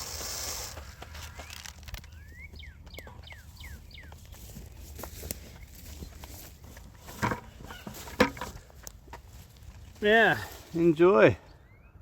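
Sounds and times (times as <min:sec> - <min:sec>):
light crunches and clicks: 0:00.2 - 0:03.1.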